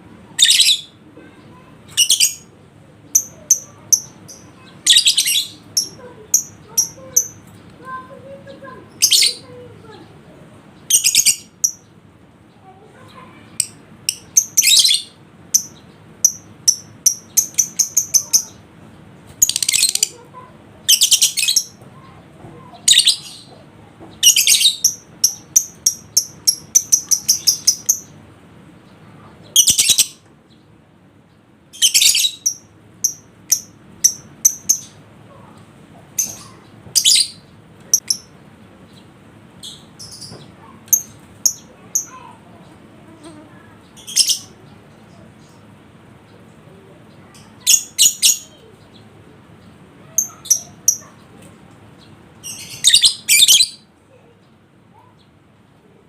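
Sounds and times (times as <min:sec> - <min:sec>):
lovebird chirping: 0:03.1 - 0:09.6, 0:10.8 - 0:11.9, 0:13.1 - 0:18.6, 0:20.9 - 0:21.8, 0:24.2 - 0:28.2, 0:28.8 - 0:30.6, 0:31.7 - 0:35.5, 0:36.2 - 0:42.3, 0:43.3 - 0:45.6, 0:47.3 - 0:49.0, 0:49.7 - 0:51.2, 0:52.0 - 0:53.9.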